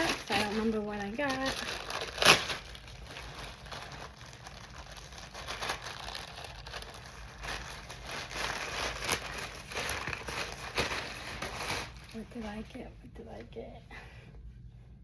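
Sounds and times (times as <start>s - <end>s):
packaging rustling and crinkling: 0.0s - 12.6s.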